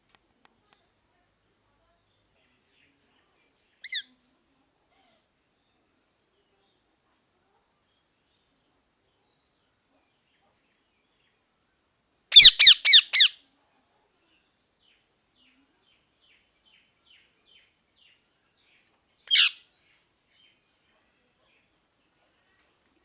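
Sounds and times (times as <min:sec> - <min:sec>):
parrot squawking: 0:12.3 - 0:13.4, 0:19.3 - 0:19.6.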